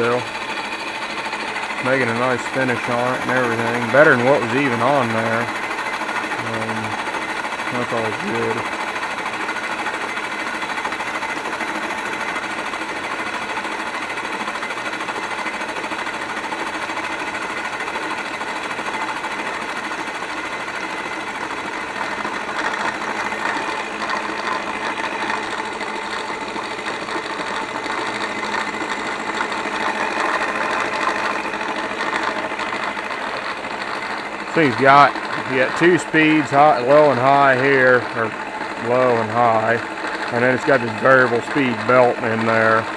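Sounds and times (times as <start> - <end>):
milling machine cutting metal: 0.0 - 42.9.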